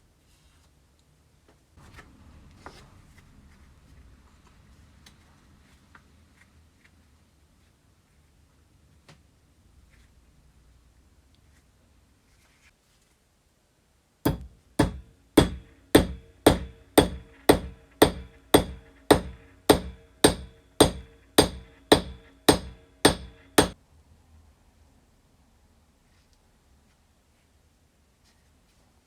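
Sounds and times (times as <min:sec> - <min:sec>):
hammer striking metal: 0:14.3 - 0:23.8.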